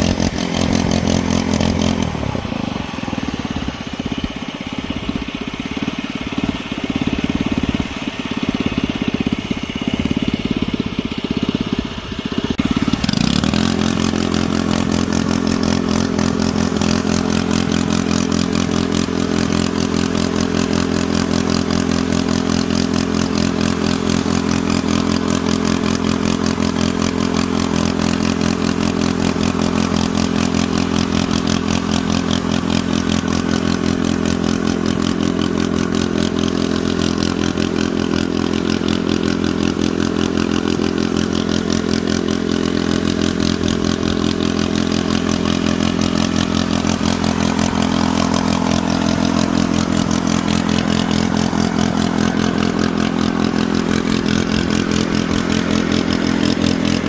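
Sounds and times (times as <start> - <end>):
engine idling: 0.0 - 57.0.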